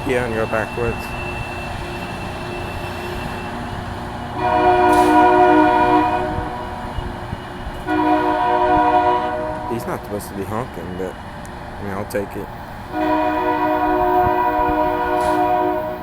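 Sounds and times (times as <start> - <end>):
train mechanical rumble: 0.0 - 16.0
air horn sounding a chord: 4.4 - 6.8, 7.9 - 10.1, 13.0 - 16.0.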